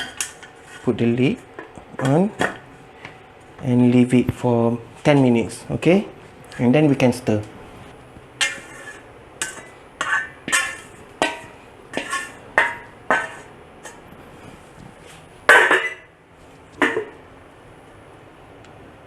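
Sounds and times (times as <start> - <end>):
utensil clinking against metal pot: 8.4 - 14.0, 16.8 - 17.2.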